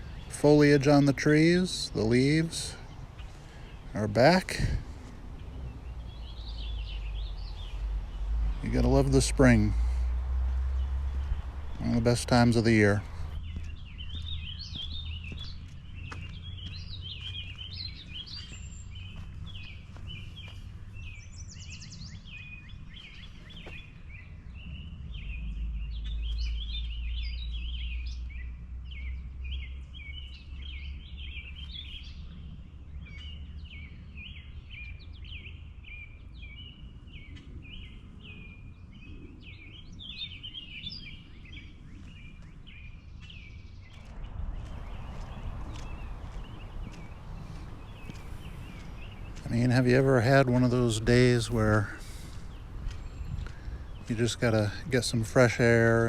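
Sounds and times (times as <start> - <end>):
small birds chirping: 0.0 - 56.0
steady low rumble: 1.2 - 22.2, 43.1 - 56.0.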